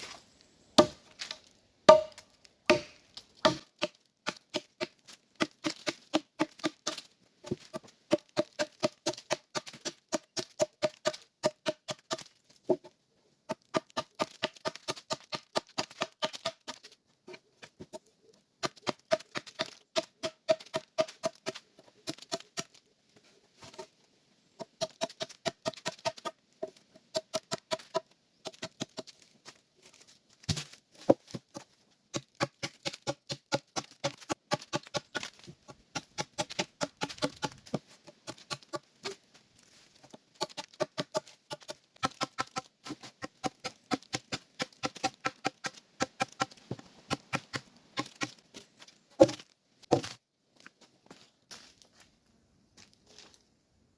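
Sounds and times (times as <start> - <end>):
tool strikes on wood: 0.8 - 1.1, 1.9 - 4.7.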